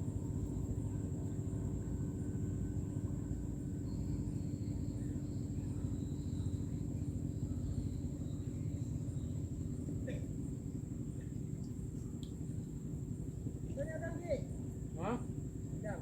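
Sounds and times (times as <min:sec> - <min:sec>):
thin high whine: 0:00.0 - 0:11.1
boat engine running: 0:00.0 - 0:16.0.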